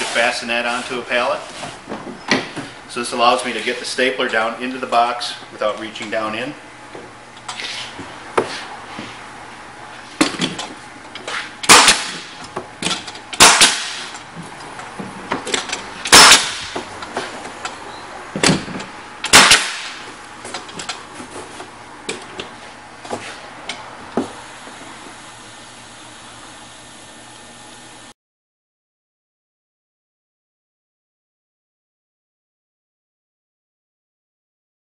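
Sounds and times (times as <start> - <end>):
pneumatic stapler firing: 11.6 - 14.2, 15.5 - 16.8, 18.4 - 21.0.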